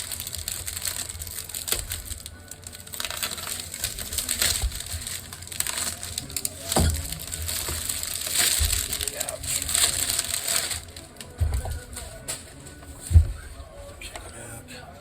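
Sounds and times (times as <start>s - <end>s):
packaging rustling and crinkling: 0.0s - 14.4s
handling knocks: 3.0s - 14.4s.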